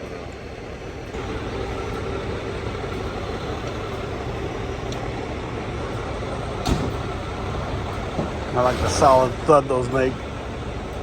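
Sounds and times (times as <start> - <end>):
diesel engine running: 0.0 - 11.0
solid thud: 6.6 - 7.2.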